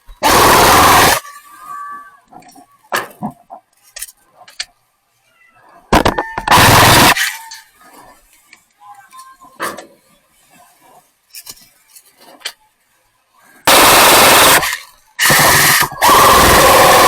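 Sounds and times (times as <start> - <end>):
airsoft rifle full-auto bursts: 0.2 - 1.2, 6.5 - 7.2, 13.7 - 17.0.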